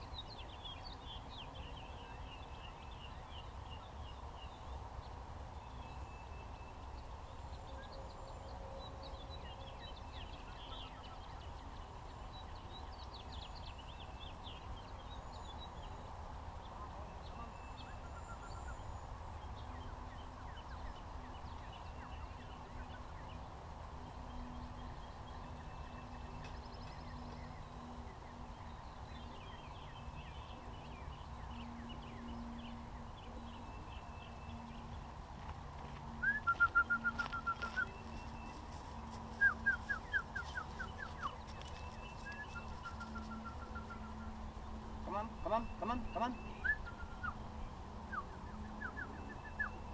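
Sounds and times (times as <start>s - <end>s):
small birds chirping: 0.0s - 49.9s
steady outdoor rumble: 0.0s - 49.9s
songbird trilling: 16.7s - 23.4s, 36.2s - 49.9s
soft high bird chirps: 36.1s - 49.9s.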